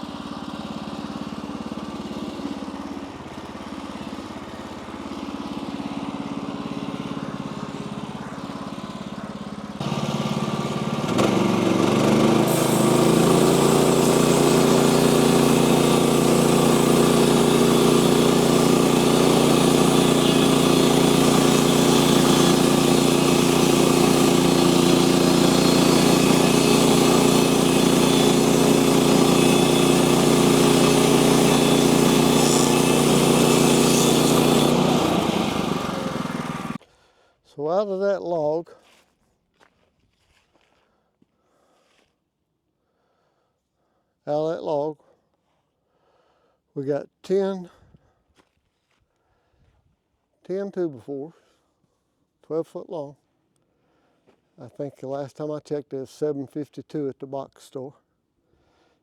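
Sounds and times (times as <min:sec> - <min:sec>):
sawmill engine revving up: 0:00.0 - 0:36.8.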